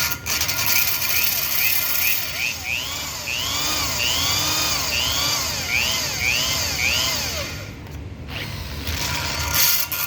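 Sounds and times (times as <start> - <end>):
electric drill boring into metal: 0.0 - 7.7.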